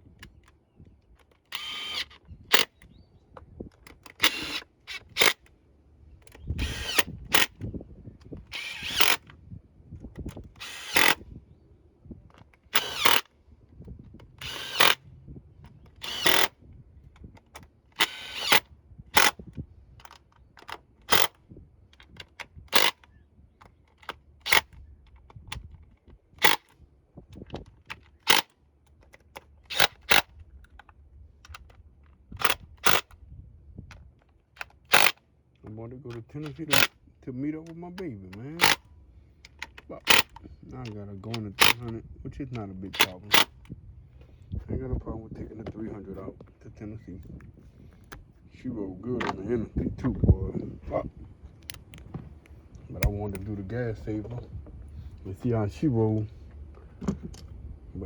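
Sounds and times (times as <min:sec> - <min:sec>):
tool clicking and rattling: 0:00.2 - 0:02.9, 0:03.7 - 0:05.5, 0:06.2 - 0:09.4, 0:10.0 - 0:11.2, 0:12.3 - 0:13.3, 0:14.2 - 0:15.0, 0:15.6 - 0:16.6, 0:17.2 - 0:33.2, 0:33.9 - 0:44.4, 0:49.2 - 0:49.5, 0:51.5 - 0:54.0.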